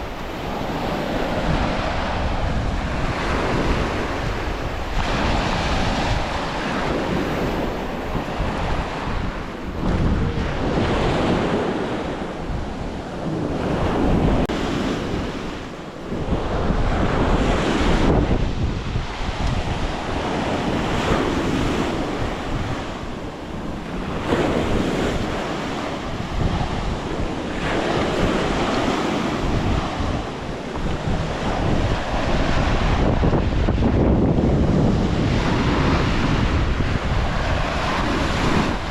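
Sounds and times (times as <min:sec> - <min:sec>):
gusty wind buffeting microphone: 0:00.0 - 0:38.9.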